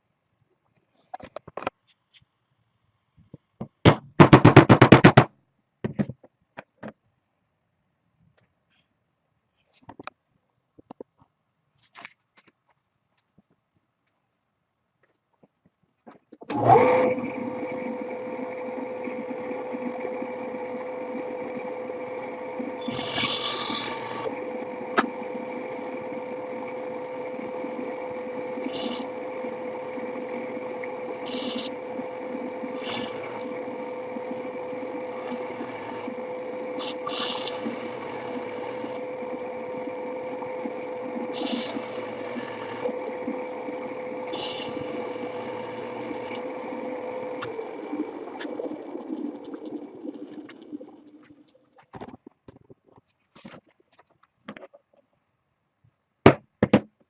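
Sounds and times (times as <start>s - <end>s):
power tool humming: 16.5s - 51.2s
hissy cutting or grinding: 22.8s - 24.4s, 28.5s - 29.6s, 31.1s - 33.6s, 35.1s - 39.0s, 41.2s - 42.9s, 44.2s - 46.4s.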